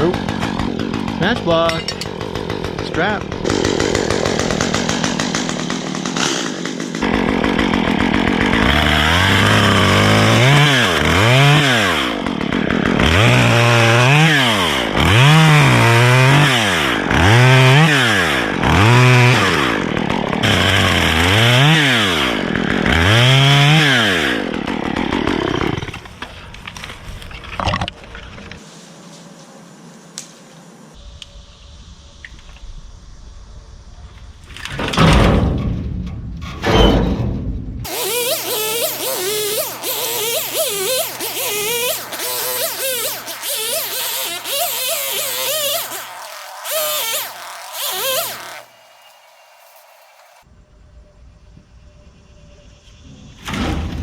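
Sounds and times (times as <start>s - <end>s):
chainsaw revving: 0.0s - 26.2s, 37.9s - 50.4s.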